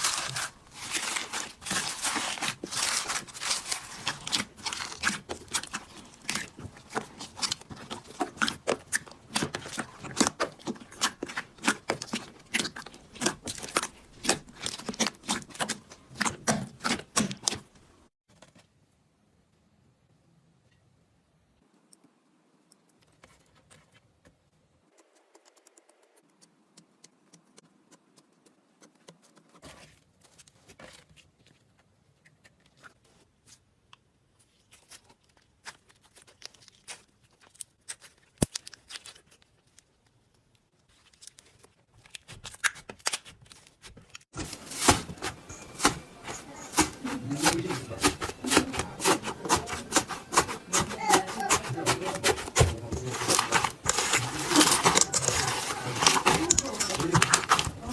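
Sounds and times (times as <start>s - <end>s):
slime crackling and popping: 0.0s - 17.6s.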